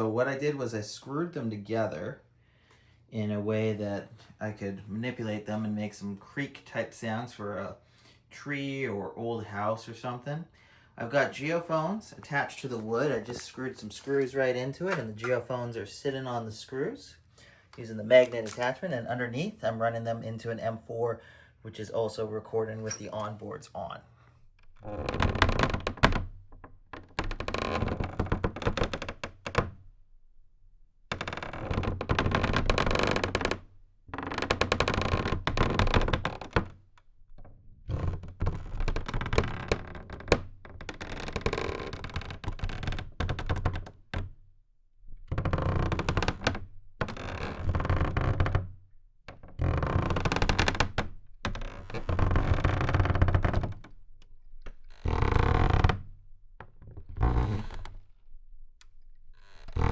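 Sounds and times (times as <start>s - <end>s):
wooden fence boards creaking: 24.7s - 29.6s, 31.1s - 36.7s, 49.3s - 53.9s, 54.8s - 56.0s.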